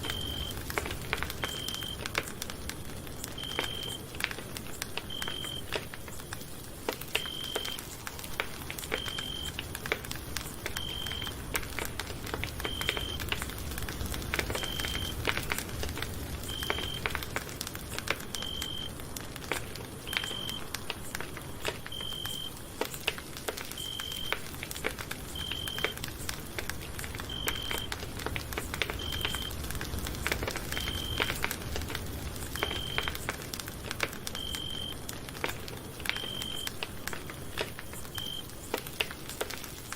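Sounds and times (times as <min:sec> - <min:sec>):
campfire crackling and popping: 0:00.0 - 0:39.9.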